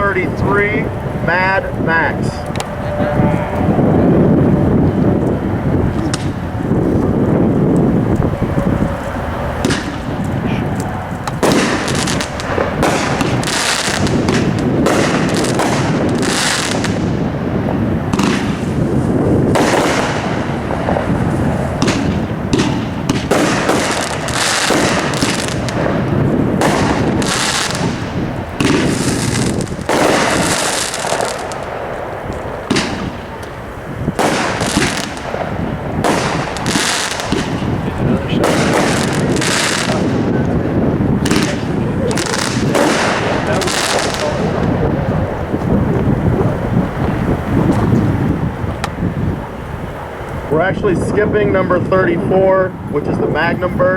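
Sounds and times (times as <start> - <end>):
fireworks reports and bursts: 0.0 - 53.9
fireworks crackle: 4.5 - 50.5.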